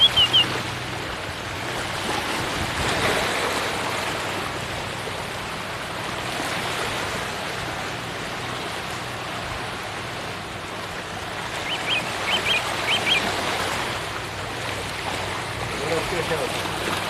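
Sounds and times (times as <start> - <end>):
small bird chirping: 0.0 - 0.5, 11.6 - 13.2.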